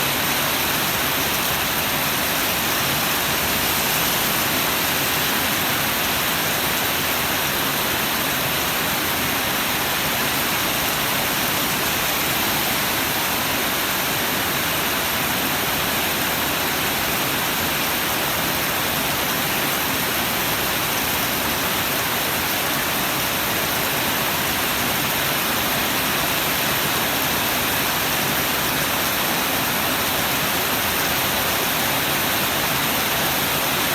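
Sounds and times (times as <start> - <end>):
heavy rain in strong wind: 0.0 - 33.9.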